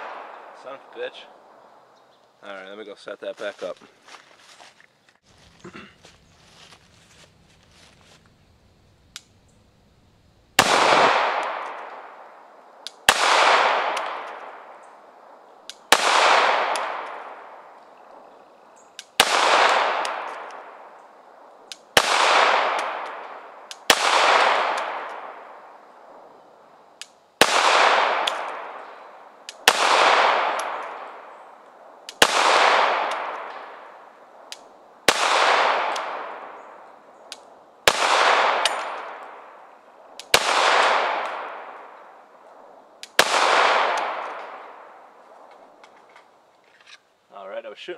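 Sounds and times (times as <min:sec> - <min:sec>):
pistol shots with echo: 0:00.0 - 0:01.1, 0:10.6 - 0:12.4, 0:13.0 - 0:14.9, 0:15.8 - 0:17.8, 0:19.0 - 0:20.9, 0:21.9 - 0:25.7, 0:27.4 - 0:31.3, 0:32.1 - 0:34.0, 0:35.1 - 0:39.6, 0:40.2 - 0:42.2, 0:43.1 - 0:45.1.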